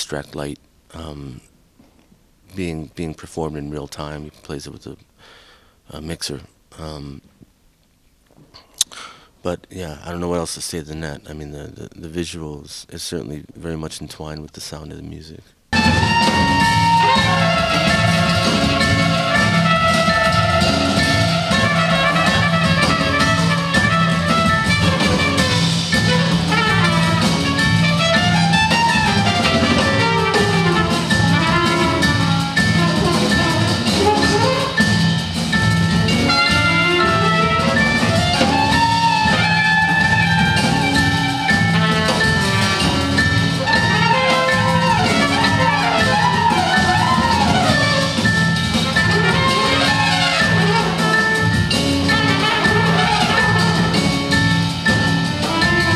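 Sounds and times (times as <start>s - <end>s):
jazz ensemble playing: 15.7s - 55.9s.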